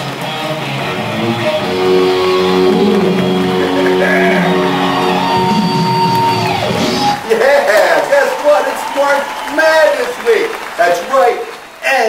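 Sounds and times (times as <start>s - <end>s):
guitar playing held chords: 0.0s - 7.2s.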